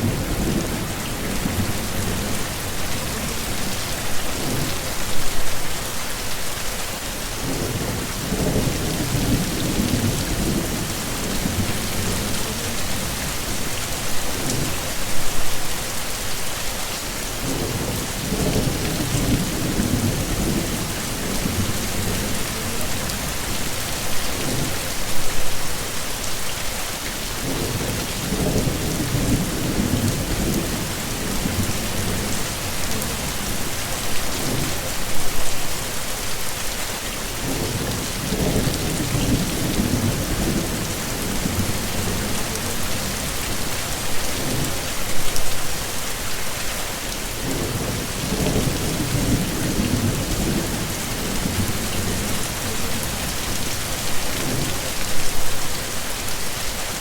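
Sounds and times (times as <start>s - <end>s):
thunder rumbling: 0.0s - 4.9s, 7.4s - 13.7s, 17.4s - 24.8s, 47.4s - 54.9s
heavy rain hissing: 0.0s - 57.0s.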